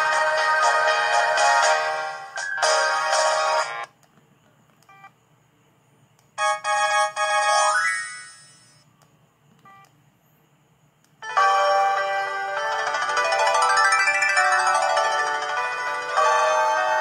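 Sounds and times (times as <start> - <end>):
phone ringtone jingle: 6.4 - 8.8, 11.2 - 17.0.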